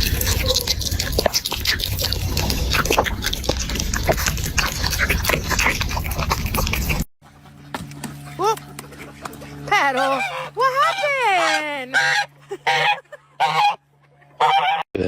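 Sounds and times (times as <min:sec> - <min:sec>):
low rumble: 0:00.0 - 0:09.7.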